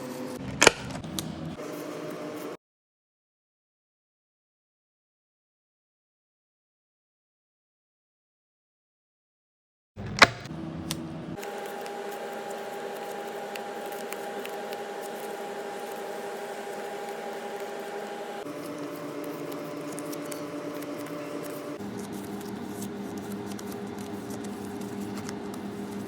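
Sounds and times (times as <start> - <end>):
electrical room hum: 0.0 - 2.6, 10.0 - 26.0
rustling sticker sheets: 10.8 - 26.0.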